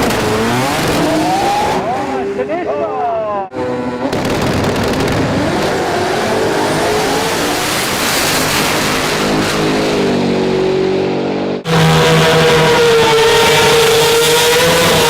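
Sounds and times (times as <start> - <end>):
car engine revving under load: 3.5 - 15.0.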